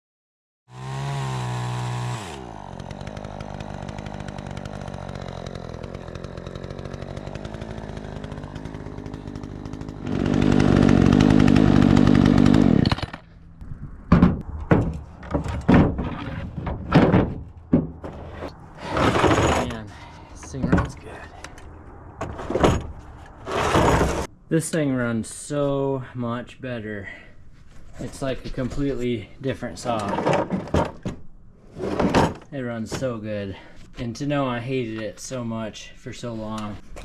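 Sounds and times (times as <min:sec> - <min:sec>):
chainsaw revving: 0:00.7 - 0:13.3, 0:18.8 - 0:20.2, 0:23.4 - 0:24.3.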